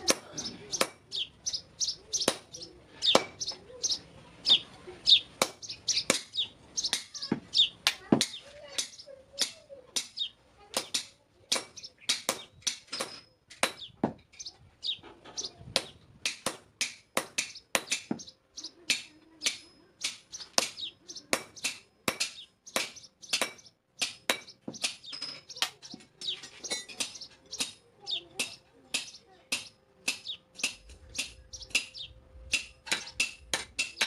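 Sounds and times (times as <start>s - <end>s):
hammer striking metal on anvil: 18.9s - 25.5s, 28.4s - 34.0s.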